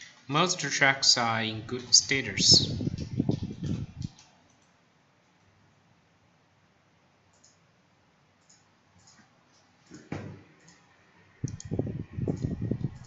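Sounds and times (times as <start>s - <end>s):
computer mouse clicks: 4.0s - 4.8s, 7.3s - 7.6s, 8.4s - 10.9s, 11.5s - 13.0s.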